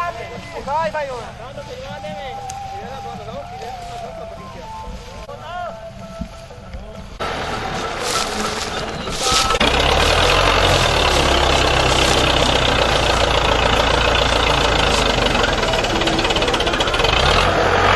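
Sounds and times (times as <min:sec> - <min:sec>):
diesel tractor engine running: 0:00.0 - 0:17.9.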